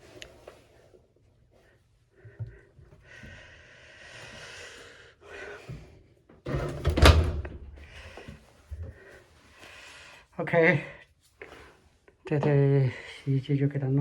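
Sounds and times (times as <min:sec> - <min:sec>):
washing machine door thump: 0:06.5 - 0:07.8.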